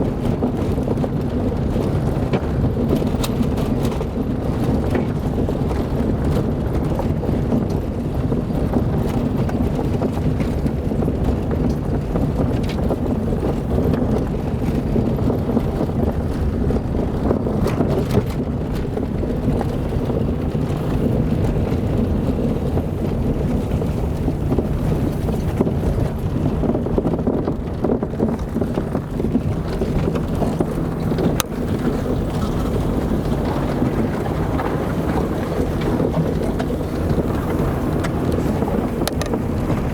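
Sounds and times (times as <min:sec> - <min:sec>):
car rumbling on dirt road: 0:00.0 - 0:39.9.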